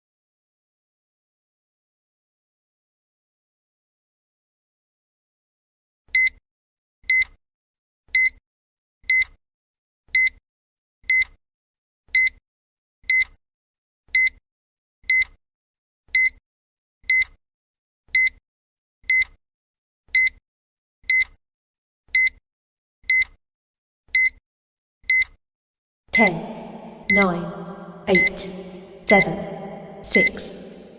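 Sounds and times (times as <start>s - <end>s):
timer beeping: 26.2s - 30.9s.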